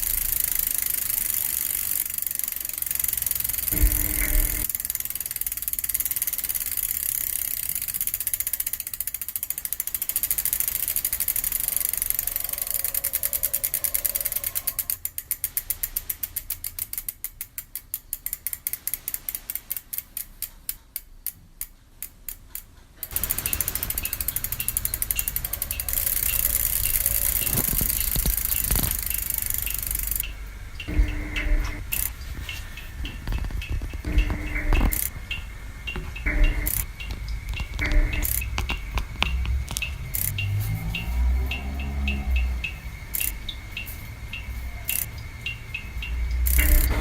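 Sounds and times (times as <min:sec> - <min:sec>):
rapid ratchet-like clicking: 0:00.0 - 0:47.0
rumbling noise texture: 0:03.6 - 0:04.7, 0:23.2 - 0:44.6.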